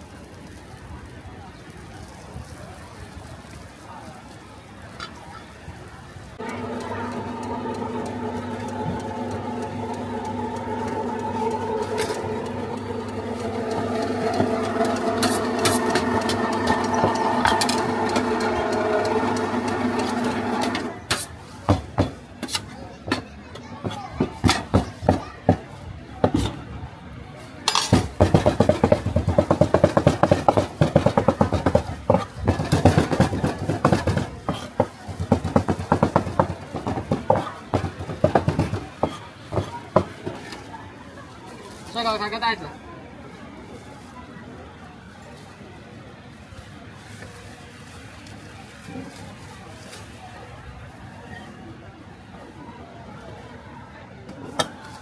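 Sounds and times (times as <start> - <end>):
machine motor humming: 6.4 - 21.0
cleaver chopping meat: 23.8 - 25.2, 27.8 - 40.6.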